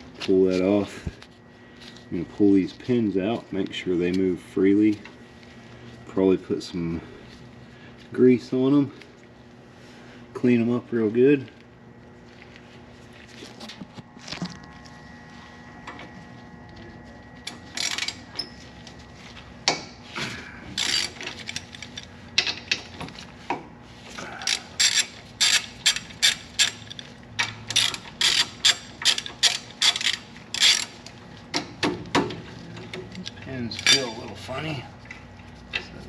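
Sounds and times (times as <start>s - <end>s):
ratchet wrench clicking: 20.8s - 22.1s, 24.5s - 31.0s, 33.7s - 34.2s.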